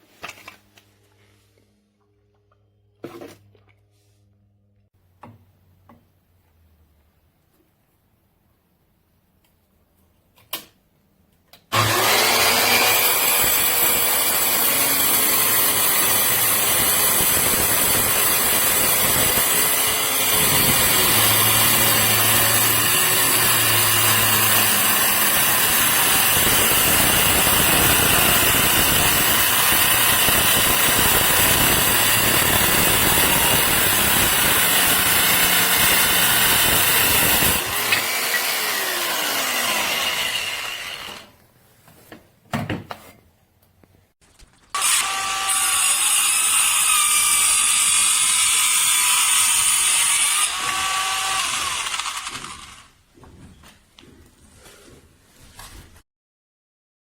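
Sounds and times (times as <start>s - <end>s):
circular saw cutting wood: 11.7s - 41.3s, 44.8s - 52.9s.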